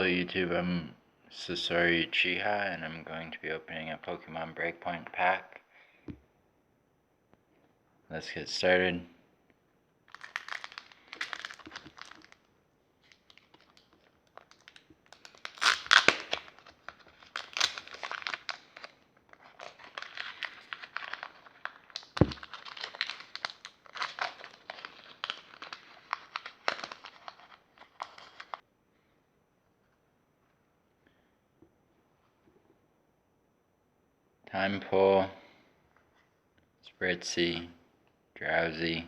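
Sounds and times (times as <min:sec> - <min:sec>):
foil wrapper crinkling and tearing: 0:10.1 - 0:28.6.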